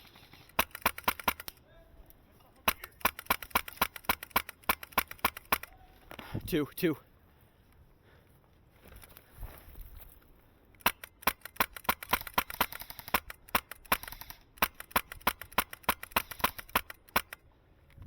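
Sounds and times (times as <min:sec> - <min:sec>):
airsoft gun rapid fire clicks: 0:00.0 - 0:01.6, 0:02.6 - 0:05.8, 0:10.8 - 0:17.4.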